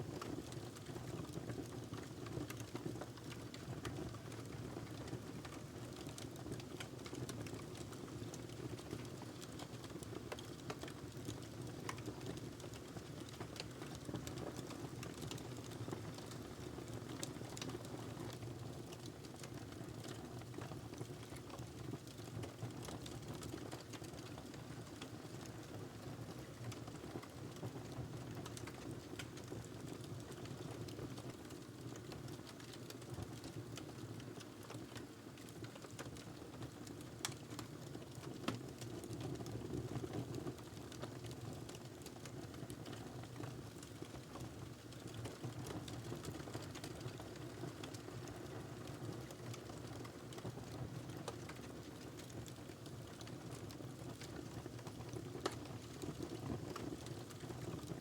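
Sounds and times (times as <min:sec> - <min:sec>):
wood fire crackling: 0:09.8 - 0:17.8, 0:40.6 - 0:58.0.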